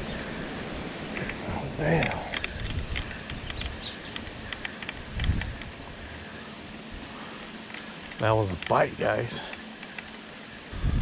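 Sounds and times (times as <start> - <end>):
insects chirping: 0.0 - 11.0
light clicks: 2.0 - 5.9.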